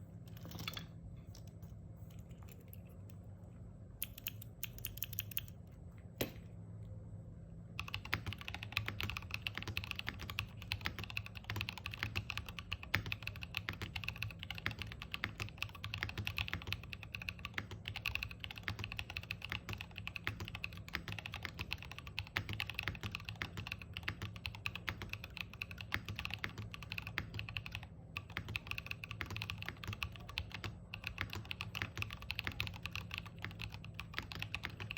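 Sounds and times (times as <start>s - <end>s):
typing on mechanical keyboard: 4.0s - 5.6s, 7.8s - 34.9s.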